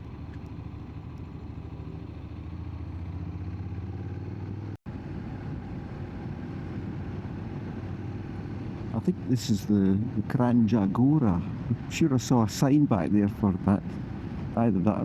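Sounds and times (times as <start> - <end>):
motorcycle engine running: 0.0 - 4.7.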